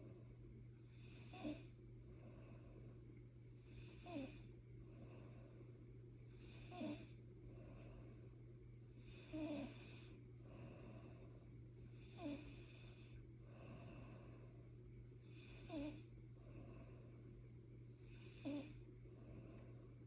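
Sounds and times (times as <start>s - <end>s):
faint snoring: 0.0s - 3.0s, 3.6s - 14.6s, 15.2s - 17.3s, 18.0s - 20.0s.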